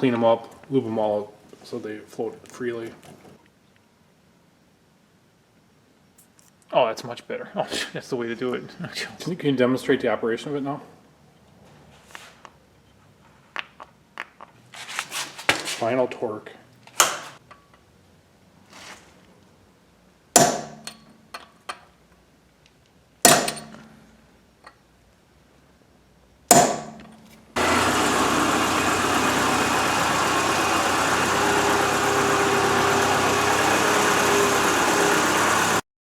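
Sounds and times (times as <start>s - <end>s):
sharp metallic knocks: 20.4s - 21.1s, 23.3s - 24.0s, 26.5s - 27.2s
vehicle running noise: 27.2s - 35.8s.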